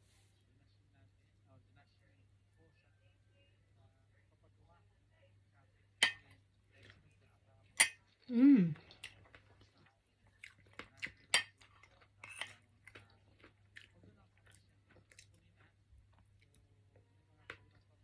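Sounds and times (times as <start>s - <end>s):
person chewing strawberries: 8.7s - 16.7s.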